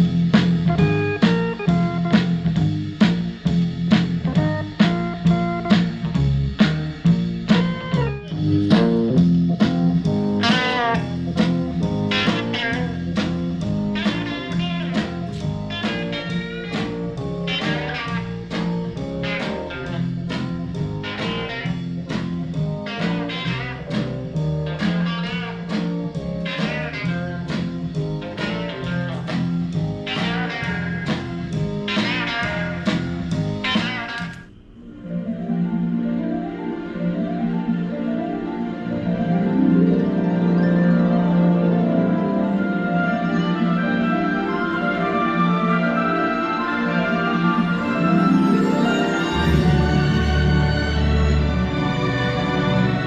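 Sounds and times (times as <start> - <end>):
blues-rock song through a speaker: 0.0 - 34.5.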